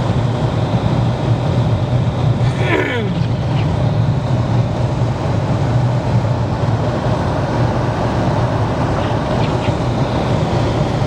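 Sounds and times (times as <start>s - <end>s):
car cabin engine and tyre hum: 0.0s - 11.0s
road noise: 0.0s - 11.0s.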